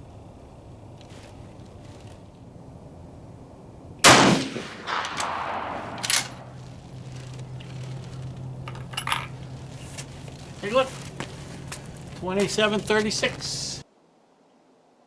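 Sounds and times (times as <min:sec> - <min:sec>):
rifle shot with echo: 0:04.0 - 0:06.9.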